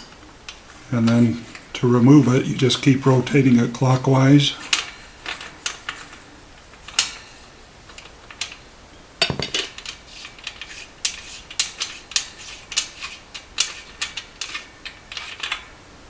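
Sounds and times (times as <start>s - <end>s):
metallic clank: 9.2s - 9.8s
metal tool clicking and clinking: 9.2s - 10.0s.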